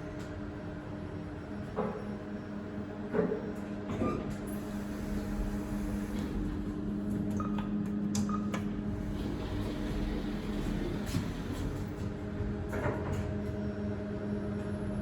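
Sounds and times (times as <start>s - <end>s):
lift machine hum: 8.8s - 12.7s.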